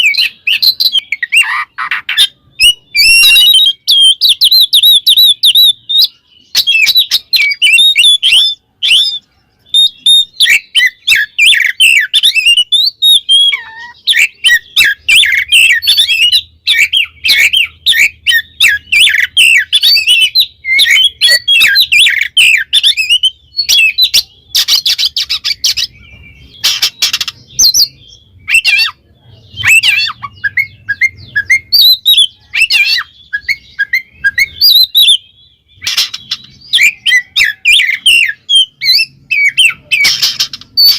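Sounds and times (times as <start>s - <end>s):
bird singing whistled notes: 0.0s - 40.9s
bird scratchy chatter: 20.8s - 35.2s, 35.8s - 40.9s.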